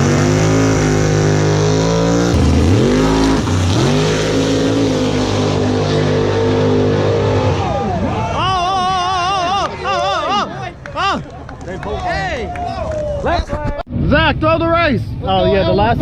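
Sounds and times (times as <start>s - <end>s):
car engine revving hard: 0.0s - 7.9s.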